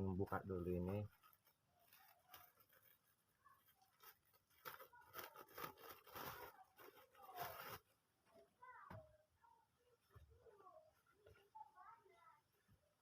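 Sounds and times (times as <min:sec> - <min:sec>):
packaging rustling and crinkling: 0:00.7 - 0:08.0.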